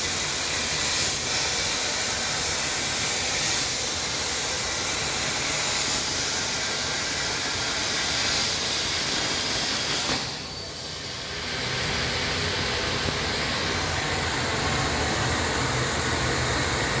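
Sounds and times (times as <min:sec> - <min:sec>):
cutting machine hissing: 0:05.5 - 0:17.0.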